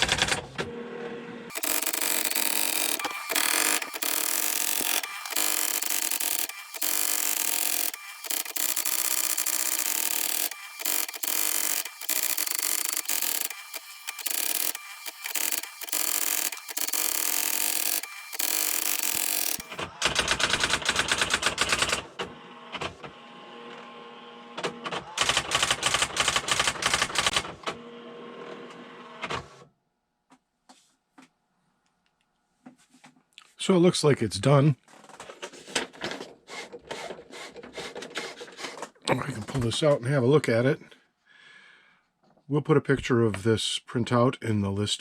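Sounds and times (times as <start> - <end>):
typewriter mechanism whirring: 0.0 - 0.7, 1.5 - 22.1, 24.8 - 27.6
typewriter character strikes rattling: 1.5 - 22.0, 25.2 - 27.4.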